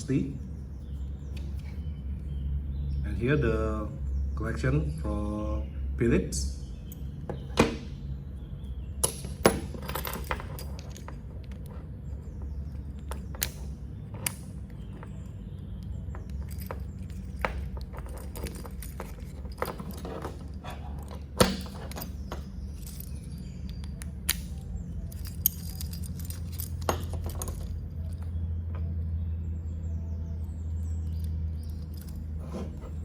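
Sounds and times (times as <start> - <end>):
steady low hum: 0.0 - 33.0
metal screwdriver bits clicking: 12.7 - 28.2.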